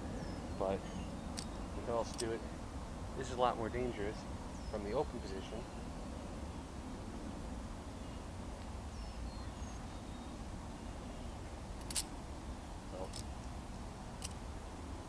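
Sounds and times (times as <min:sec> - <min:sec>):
steady low rumble: 0:00.0 - 0:15.0
butterfly knife handles clacking: 0:02.1 - 0:02.4.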